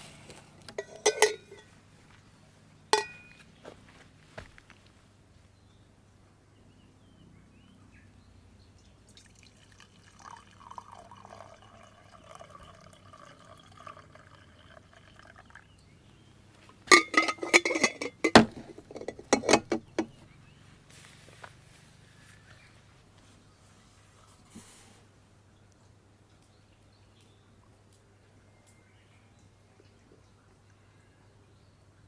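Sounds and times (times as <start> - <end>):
cups clinking: 0.0 - 1.8, 3.0 - 3.5, 9.2 - 15.6, 16.6 - 20.2
liquid pouring into a cup: 9.1 - 15.8.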